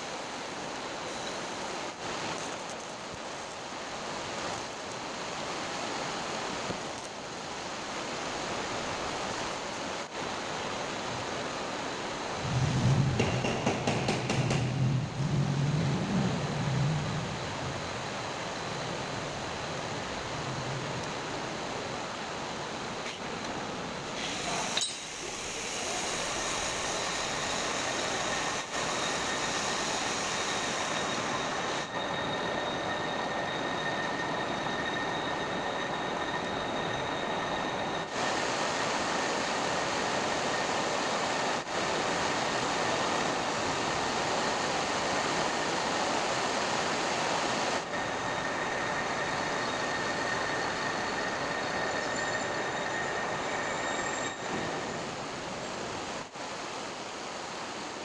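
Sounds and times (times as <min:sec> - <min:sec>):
metal lathe machining hiss: 0:24.0 - 0:56.2.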